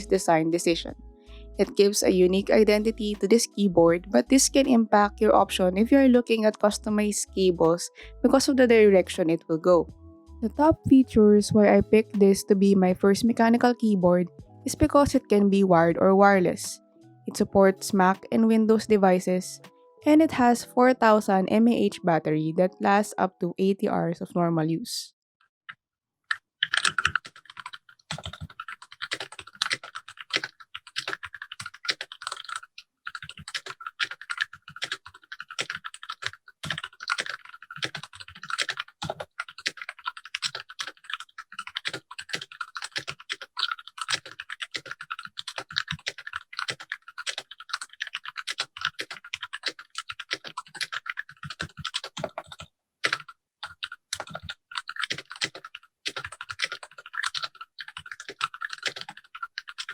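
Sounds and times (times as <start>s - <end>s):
mechanical keyboard typing: 26.3s - 59.9s.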